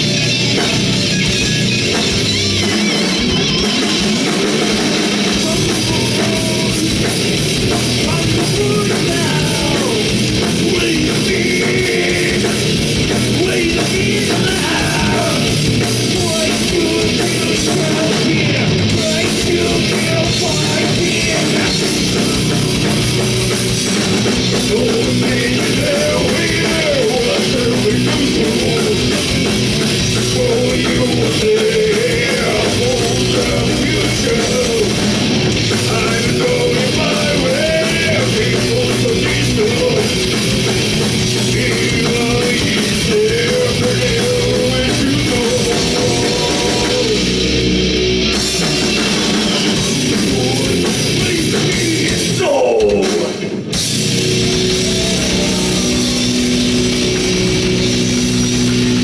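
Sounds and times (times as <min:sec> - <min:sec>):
heavy rock band playing: 0:00.0 - 0:59.0
wavering vocals: 0:30.2 - 0:40.7, 0:41.4 - 0:47.7.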